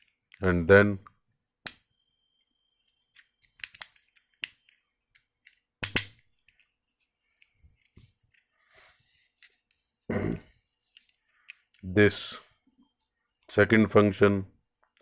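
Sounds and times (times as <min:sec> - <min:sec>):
stapler clicks and snaps: 0:05.8 - 0:06.2.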